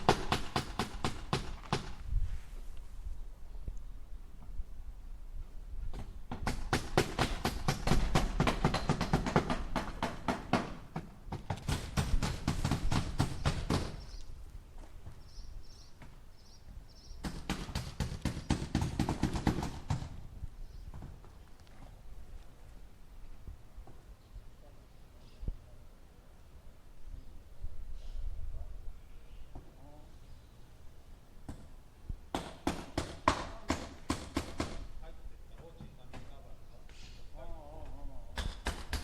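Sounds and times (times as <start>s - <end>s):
hammer driving nails into wood: 0.0s - 2.0s, 5.9s - 14.0s, 17.2s - 20.2s, 32.3s - 34.9s, 38.4s - 39.0s.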